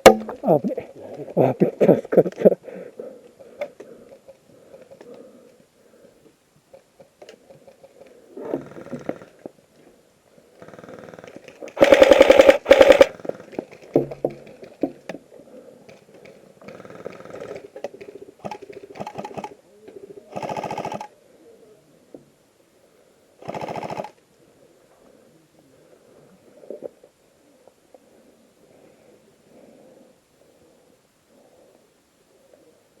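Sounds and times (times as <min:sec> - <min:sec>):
airsoft gun firing bursts: 0:11.8 - 0:13.3, 0:18.4 - 0:19.5, 0:20.4 - 0:21.1, 0:23.4 - 0:24.1.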